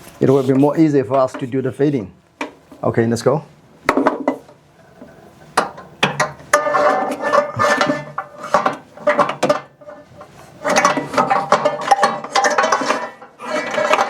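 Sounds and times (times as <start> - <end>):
cord scraping against pillar: 4.4 - 14.0.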